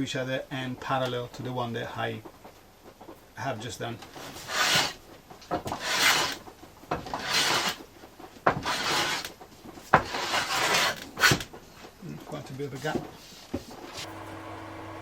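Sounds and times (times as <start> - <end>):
hand plane shaving strokes: 4.1 - 11.6.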